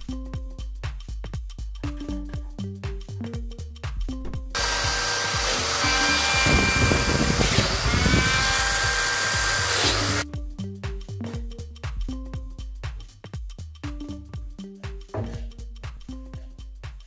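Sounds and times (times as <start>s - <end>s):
power tool whirring: 4.6s - 10.2s.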